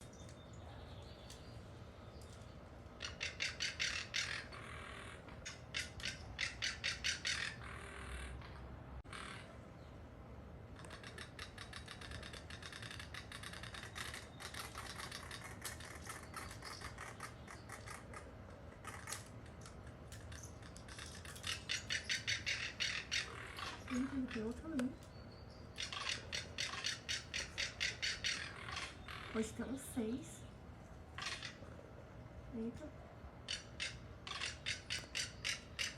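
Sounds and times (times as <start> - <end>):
hawks calling rapid sharp notes: 3.0 - 8.4, 20.3 - 24.7, 25.8 - 29.7, 31.2 - 31.7, 33.4 - 35.9.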